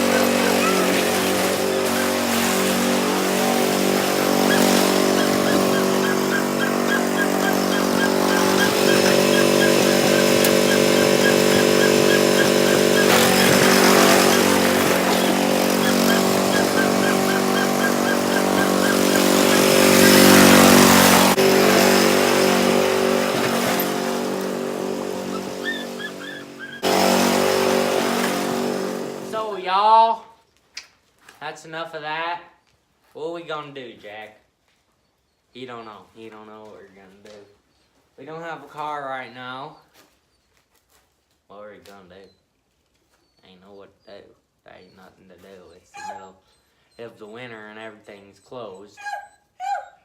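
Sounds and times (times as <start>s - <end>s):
riding lawn mower engine: 0.0s - 29.5s.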